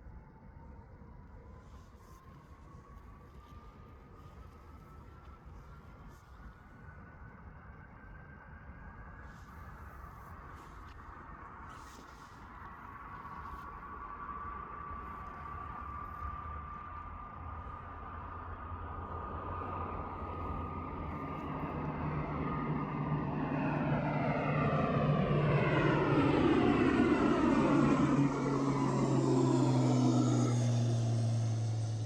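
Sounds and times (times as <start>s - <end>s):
jet engines whining and droning: 12.5s - 32.0s.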